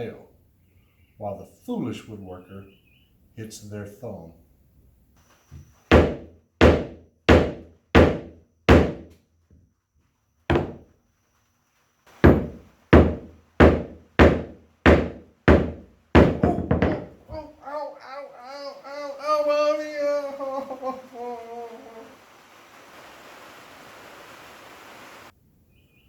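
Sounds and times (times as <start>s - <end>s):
hammer striking nail into wood: 5.9s - 9.2s, 10.5s - 10.9s, 12.2s - 17.2s.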